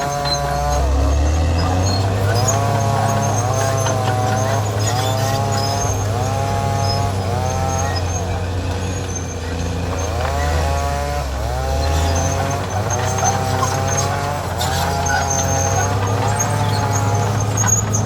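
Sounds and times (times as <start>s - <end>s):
high squeal: 0.0s - 10.8s, 11.6s - 18.0s
bulldozer diesel engine running: 0.0s - 18.0s.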